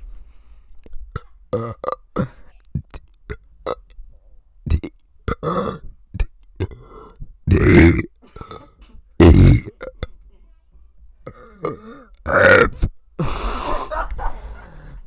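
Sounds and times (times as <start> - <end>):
mouth clicks: 0.8 - 4.0, 4.7 - 8.6
person burping: 1.2 - 3.8, 4.7 - 10.1, 11.3 - 13.9.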